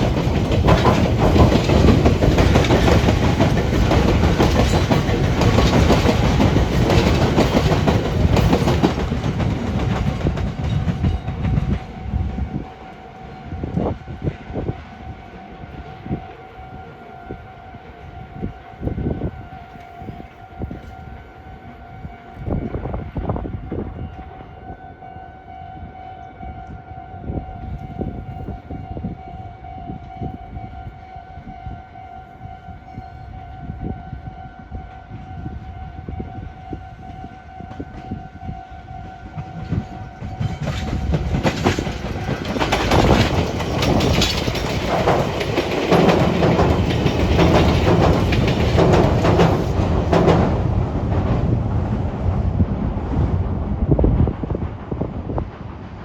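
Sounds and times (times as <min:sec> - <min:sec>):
wheels clattering over rail joints: 0:00.0 - 0:11.7, 0:39.4 - 0:51.8
train wheels clicking: 0:00.0 - 0:12.0, 0:39.1 - 0:51.6.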